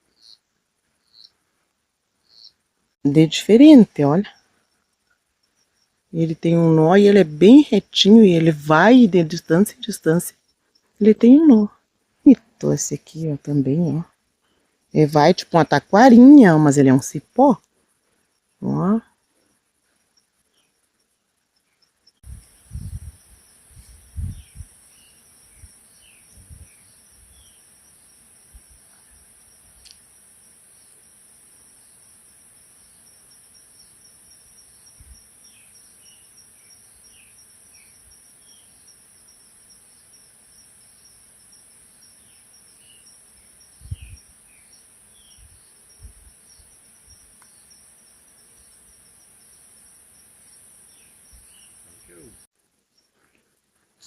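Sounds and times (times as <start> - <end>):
insects droning: 0.0 - 54.0
bird chirps: 0.1 - 0.4, 1.0 - 1.4, 2.2 - 2.6.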